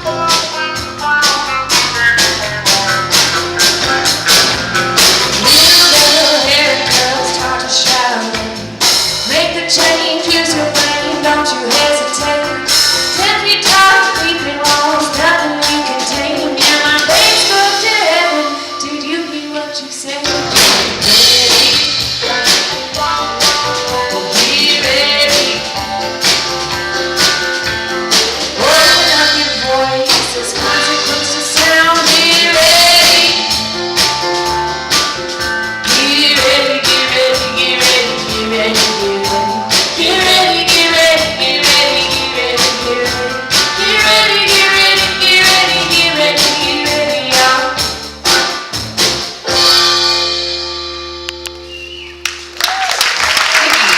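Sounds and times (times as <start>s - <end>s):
person singing: 0.0s - 2.4s, 5.4s - 26.1s, 28.1s - 34.1s, 35.8s - 47.9s
band playing a song: 0.0s - 53.9s.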